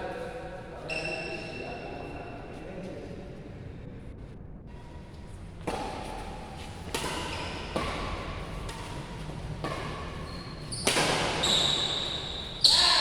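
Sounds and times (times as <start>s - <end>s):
rackets hitting shuttlecock: 5.6s - 13.0s.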